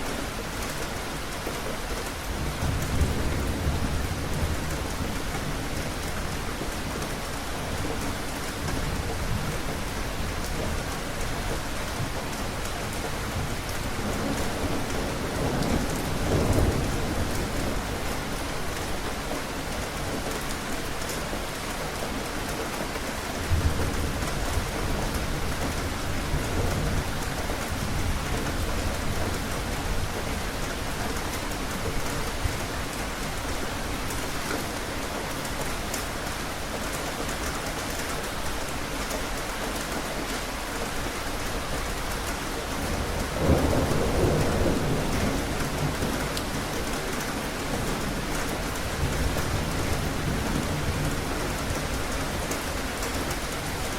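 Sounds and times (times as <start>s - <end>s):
heavy rain: 0.0s - 53.9s
thunder rumbling: 42.8s - 53.9s.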